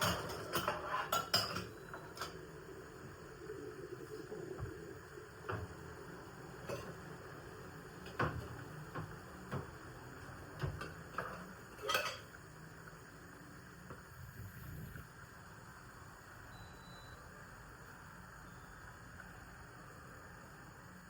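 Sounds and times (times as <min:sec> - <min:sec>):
dishes and utensils clinking: 0:00.0 - 0:02.4, 0:10.6 - 0:12.4.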